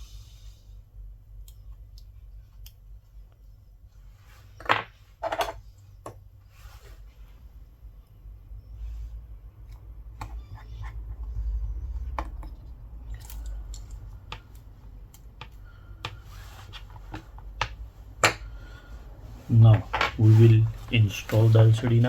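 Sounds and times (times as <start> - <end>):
low steady hum: 0.0 - 22.0
hand tools clicking and tapping: 13.2 - 16.2.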